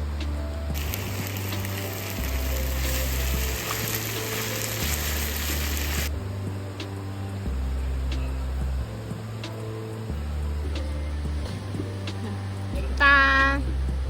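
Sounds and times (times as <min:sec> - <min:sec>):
background music with bass line: 0:00.0 - 0:14.0
food sizzling in a pan: 0:00.8 - 0:06.1.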